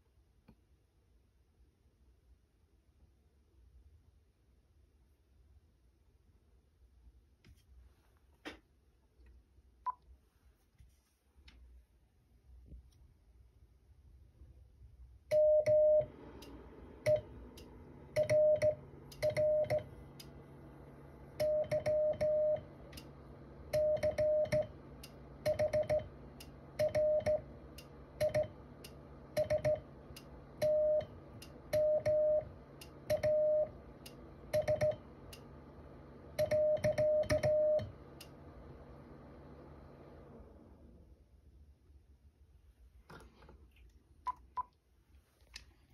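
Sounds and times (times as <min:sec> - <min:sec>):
morse code sidetone beeping: 0:18.2 - 0:19.9, 0:21.4 - 0:22.6, 0:23.8 - 0:24.7, 0:25.4 - 0:26.1, 0:26.8 - 0:27.4, 0:29.4 - 0:29.8, 0:30.6 - 0:31.1, 0:31.8 - 0:32.5, 0:33.1 - 0:33.7.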